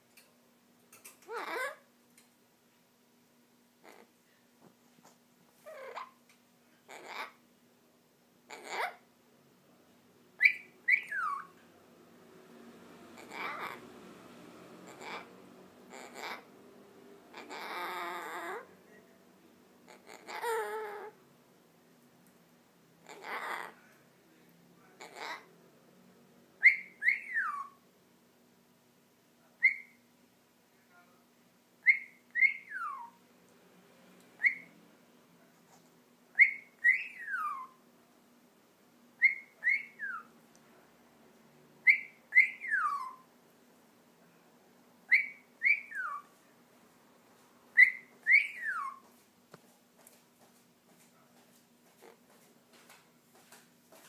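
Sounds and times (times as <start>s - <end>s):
parrot whistling: 10.4s - 11.5s, 13.2s - 13.8s, 26.6s - 27.8s, 29.6s - 30.0s, 31.8s - 33.2s, 34.4s - 34.8s, 36.4s - 37.8s, 39.2s - 40.3s, 41.8s - 43.2s, 45.1s - 46.3s, 47.7s - 49.0s.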